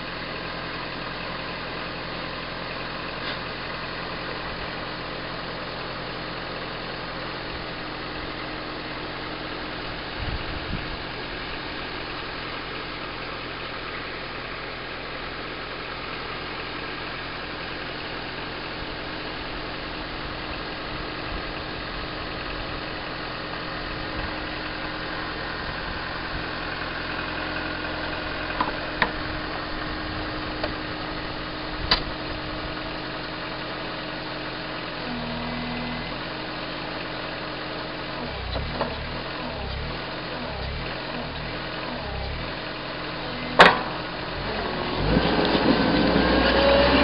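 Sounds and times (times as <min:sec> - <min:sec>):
diesel engine idling: 0:00.0 - 0:47.0
low pulsing throb: 0:38.2 - 0:42.7
loud knock: 0:43.6 - 0:44.0.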